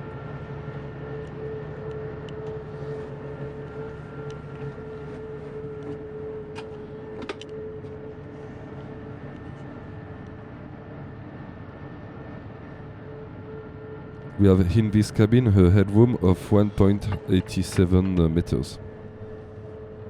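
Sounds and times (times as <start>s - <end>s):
mechanical hum with tone: 0.0s - 20.0s
deep drone: 14.4s - 20.0s.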